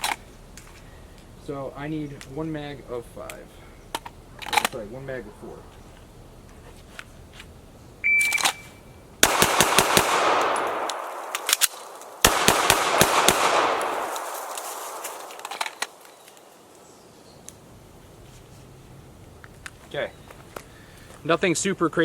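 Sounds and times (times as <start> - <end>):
shot timer beep: 8.0 - 8.7
pistol reload clicks: 9.2 - 14.1
pistol shots: 9.2 - 16.0.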